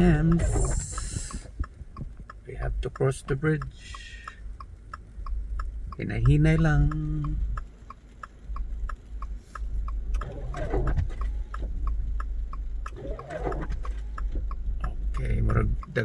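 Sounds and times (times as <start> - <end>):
person speaking: 0.0 - 1.6, 2.4 - 4.4, 6.0 - 7.6
car cabin rumble: 0.0 - 16.0
fast even ticking: 0.0 - 16.0.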